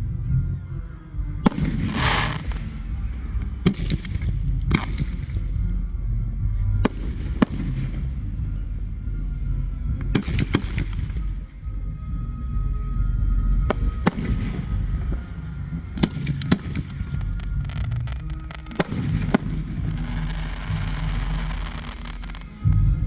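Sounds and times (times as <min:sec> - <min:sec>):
music: 0:00.0 - 0:23.0
fireworks crackling: 0:01.5 - 0:02.8, 0:13.7 - 0:22.7
fireworks bangs: 0:01.5 - 0:02.9, 0:13.7 - 0:22.7.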